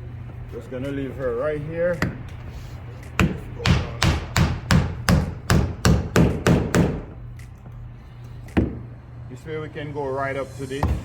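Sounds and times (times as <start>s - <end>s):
hammer blows ringing: 3.2s - 7.1s.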